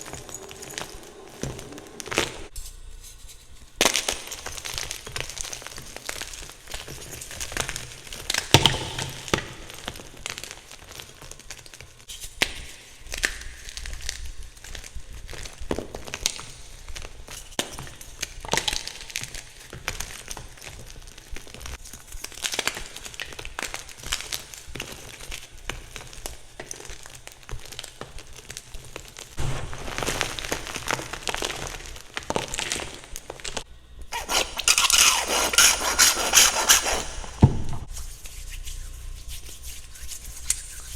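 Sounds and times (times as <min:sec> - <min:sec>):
chalk cracking and crunching: 0:21.4 - 0:40.9.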